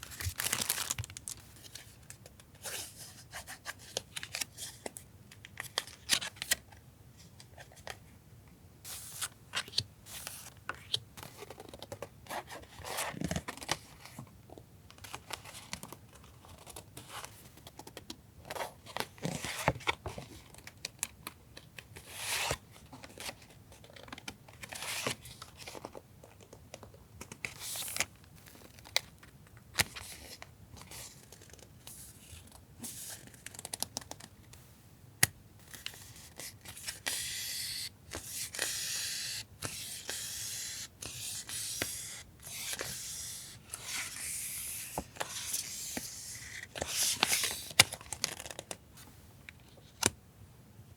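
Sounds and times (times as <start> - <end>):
paper rustling and tearing: 0.0 - 1.4.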